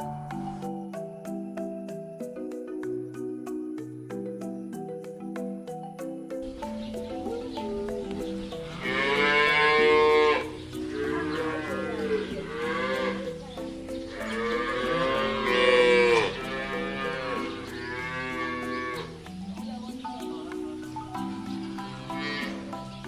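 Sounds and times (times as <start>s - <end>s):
background music: 0.0s - 23.0s
cattle mooing: 8.7s - 13.4s, 14.2s - 19.1s, 22.0s - 22.6s.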